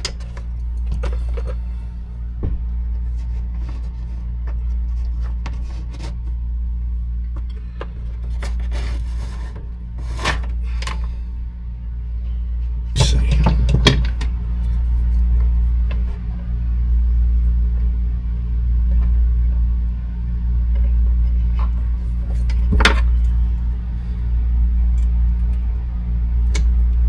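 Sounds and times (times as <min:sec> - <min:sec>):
hands and tools handling wire: 0:00.0 - 0:06.4, 0:07.3 - 0:11.2, 0:12.9 - 0:16.3, 0:20.8 - 0:24.3
steady low hum: 0:00.0 - 0:27.0.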